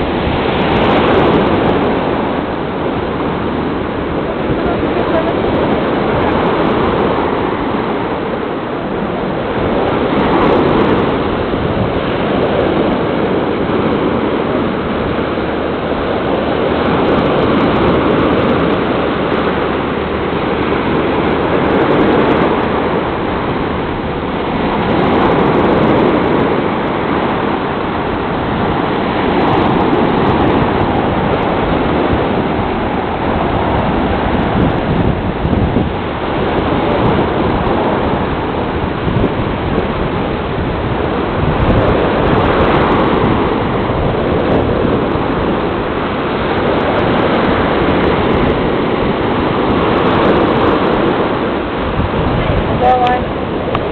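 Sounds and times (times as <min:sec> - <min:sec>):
waves breaking on shore: 0:00.0 - 0:53.9.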